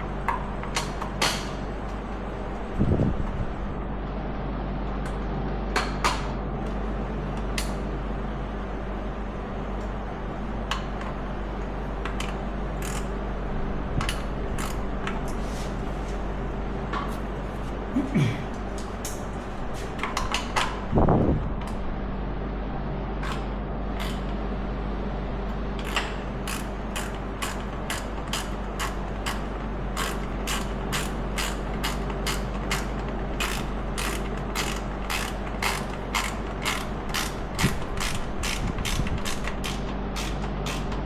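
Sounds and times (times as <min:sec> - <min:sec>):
ratchet wrench clicking: 0:12.2 - 0:13.1, 0:14.1 - 0:14.9, 0:24.0 - 0:24.3, 0:25.8 - 0:41.0.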